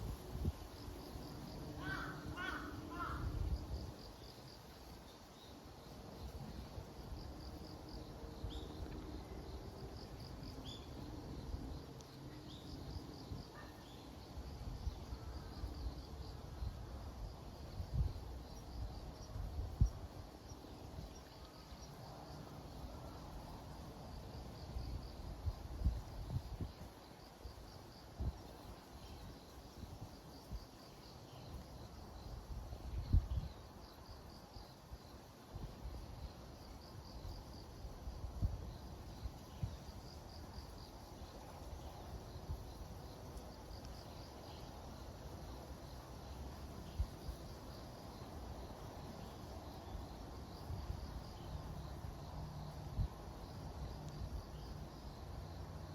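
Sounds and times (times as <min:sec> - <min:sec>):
insects trilling: 0:00.0 - 0:55.9
wind on microphone: 0:32.8 - 0:33.6.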